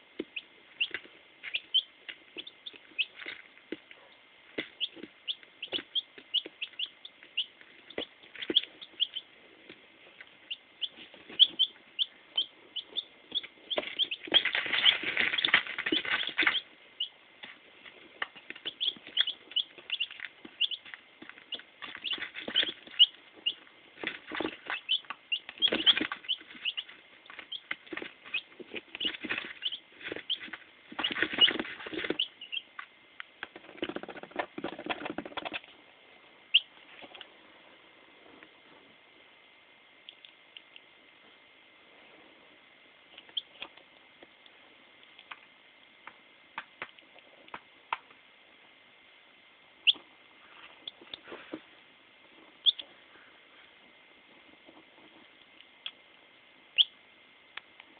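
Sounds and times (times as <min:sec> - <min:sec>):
chicks peeping: 0:00.1 - 0:35.7, 0:36.5 - 0:37.4, 0:43.1 - 0:43.8, 0:49.8 - 0:51.6, 0:52.3 - 0:53.4, 0:56.7 - 0:57.0
rustling noise: 0:13.3 - 0:16.7, 0:17.4 - 0:32.3.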